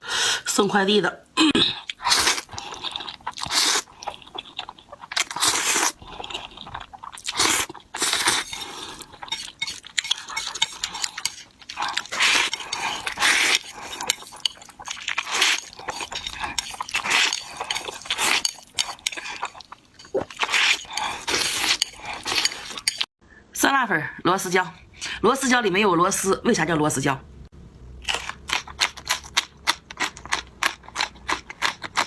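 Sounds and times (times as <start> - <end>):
chewing and biting food: 1.9 - 23.1, 28.0 - 32.0.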